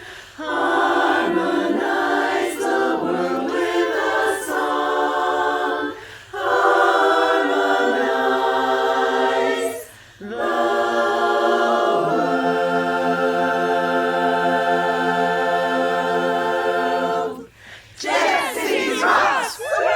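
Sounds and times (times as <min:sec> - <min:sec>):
women's chorus singing a cappella: 0:00.0 - 0:19.9.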